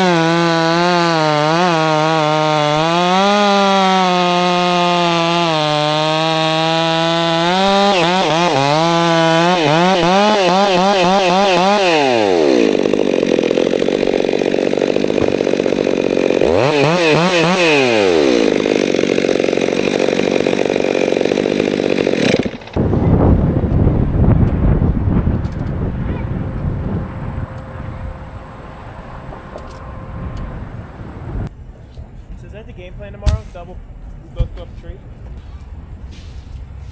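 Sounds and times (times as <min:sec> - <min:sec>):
chainsaw cutting wood: 0:00.0 - 0:22.8, 0:33.3 - 0:33.8
wind on microphone: 0:22.8 - 0:28.6.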